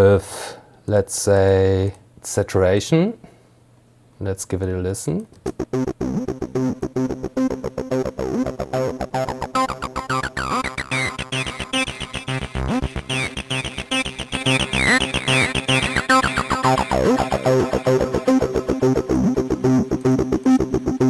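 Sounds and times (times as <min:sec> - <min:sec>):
distorted acid bass line: 0:05.4 - 0:21.0.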